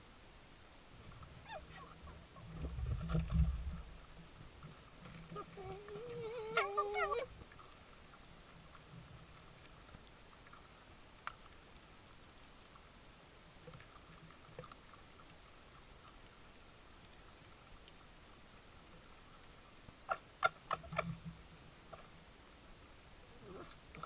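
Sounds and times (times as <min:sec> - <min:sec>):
faint ticks: 0:01.0 - 0:24.0
fox whining: 0:01.4 - 0:02.2, 0:05.4 - 0:07.3.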